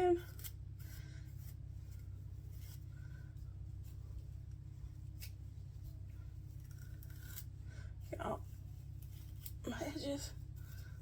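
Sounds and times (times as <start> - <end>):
steady low hum: 0.0 - 11.0
hair rustling: 0.4 - 11.0.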